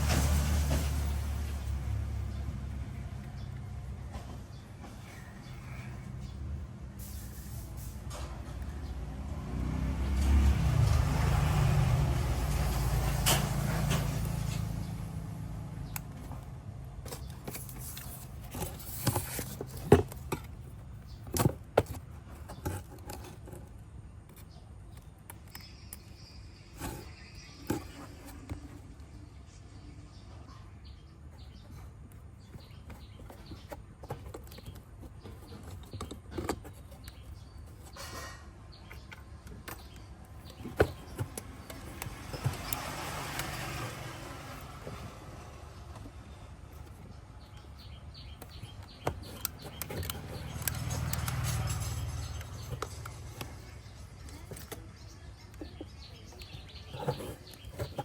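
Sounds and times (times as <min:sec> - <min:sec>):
vehicle passing: 0:00.0 - 0:04.3, 0:08.4 - 0:17.0, 0:41.4 - 0:46.9, 0:48.2 - 0:55.2.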